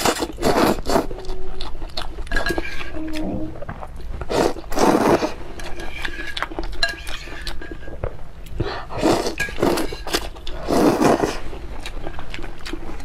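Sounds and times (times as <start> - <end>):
person slurping: 4.3 - 5.4, 8.9 - 11.5.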